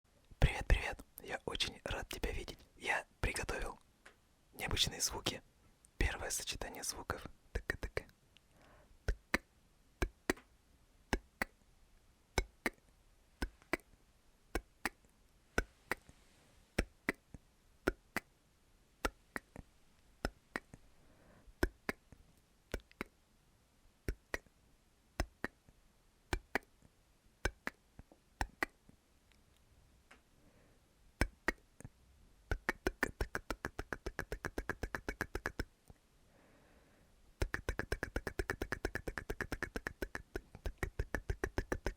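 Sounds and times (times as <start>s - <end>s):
tongue clicks: 0.4s - 10.5s, 11.1s - 11.6s, 12.3s - 16.2s, 16.8s - 18.3s, 19.0s - 20.8s, 21.6s - 23.2s, 24.0s - 24.5s, 25.2s - 25.7s, 26.3s - 29.6s, 31.2s - 36.0s, 37.4s - 41.9s.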